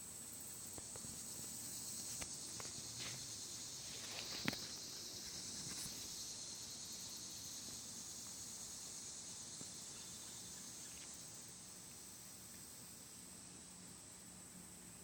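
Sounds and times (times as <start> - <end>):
insects chirring: 0.0 - 15.0.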